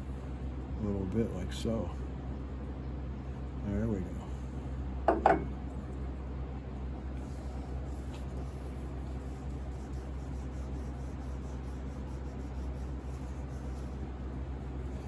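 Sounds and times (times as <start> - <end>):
low hum: 4.2 - 15.0
cloth pad scrubbing wood: 7.4 - 14.0.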